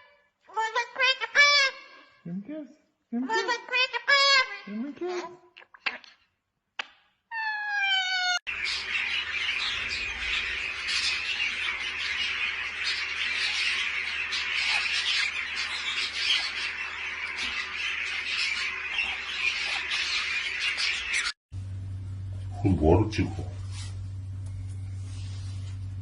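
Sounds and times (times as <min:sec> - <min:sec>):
parrots squawking and chattering: 0:00.5 - 0:02.2, 0:03.3 - 0:06.3, 0:07.3 - 0:21.4.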